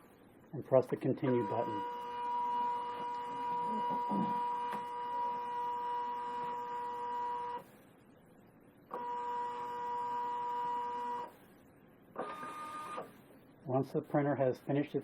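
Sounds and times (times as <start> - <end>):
label printer feed motor whine: 1.2 - 7.7, 8.9 - 11.4, 12.2 - 13.2.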